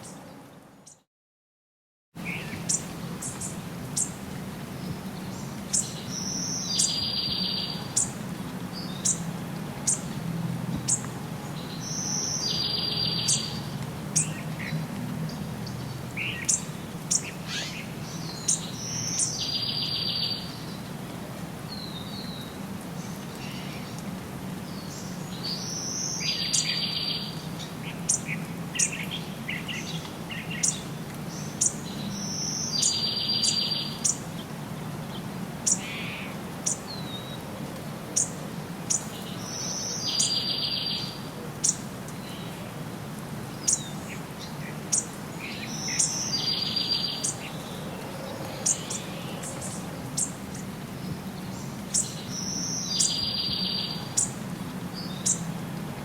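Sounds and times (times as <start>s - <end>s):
bird song with buzzy trill: 5.3s - 8.2s, 11.7s - 14.4s, 16.2s - 20.6s, 44.9s - 47.7s, 51.4s - 54.4s.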